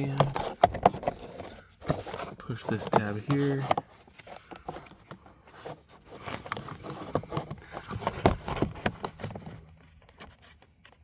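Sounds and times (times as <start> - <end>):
plastic trim scraping and clicking: 0.0 - 11.0.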